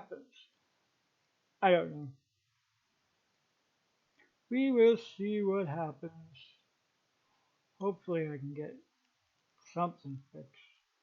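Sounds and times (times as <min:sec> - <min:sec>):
man speaking: 0:00.0 - 0:00.4, 0:01.6 - 0:02.2, 0:04.5 - 0:06.6, 0:07.8 - 0:08.8, 0:09.8 - 0:10.6.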